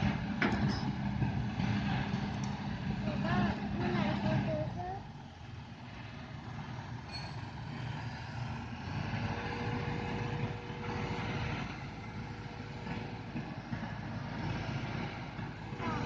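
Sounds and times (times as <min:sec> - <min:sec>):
excavator diesel engine rumbling: 0:00.0 - 0:16.0
thin steady whine: 0:09.2 - 0:16.0.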